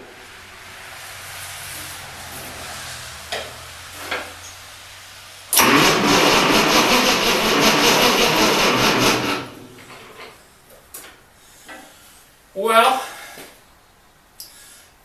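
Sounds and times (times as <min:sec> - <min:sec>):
tractor engine cranking: 0:05.5 - 0:10.4.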